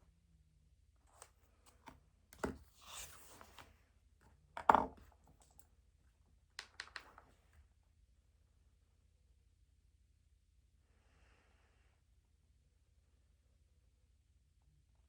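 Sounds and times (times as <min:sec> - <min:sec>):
object knocking on desk: 0:04.6 - 0:05.0
light clicks and taps: 0:06.6 - 0:07.3.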